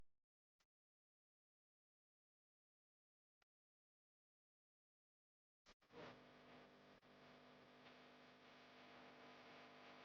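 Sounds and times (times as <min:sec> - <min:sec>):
faint hum with hiss: 0:05.9 - 0:10.0.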